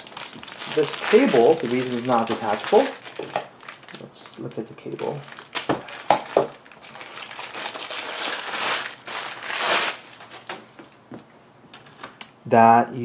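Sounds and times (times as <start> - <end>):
packaging crinkling and rustling: 0.0 - 11.0.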